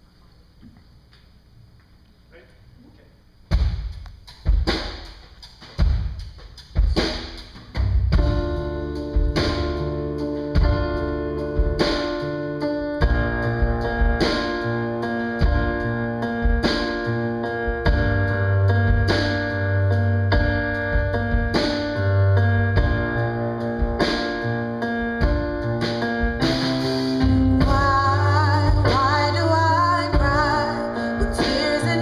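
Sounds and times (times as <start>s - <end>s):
bass line: 6.8s - 32.0s
guitar and keyboard chords: 8.1s - 32.0s
person singing: 27.6s - 32.0s.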